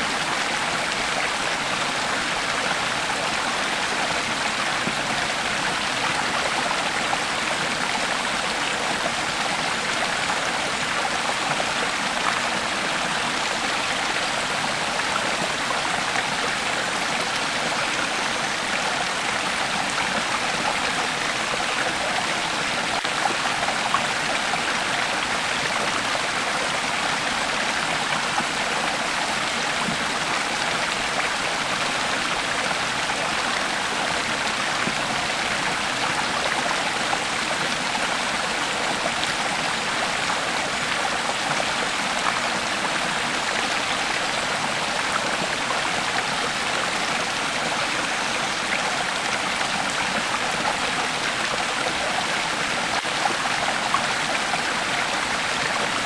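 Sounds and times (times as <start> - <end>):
creek water babbling: 0.0 - 56.0.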